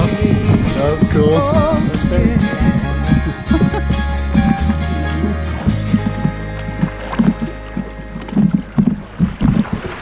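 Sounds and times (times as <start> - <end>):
slow worship song: 0.0 - 6.0.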